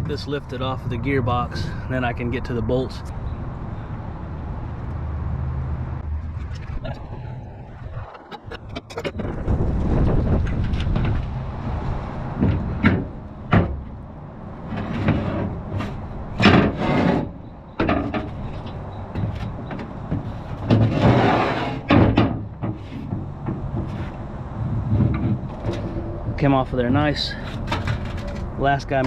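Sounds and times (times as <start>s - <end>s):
tools clanking on metal: 14.7s - 24.2s, 24.9s - 29.0s.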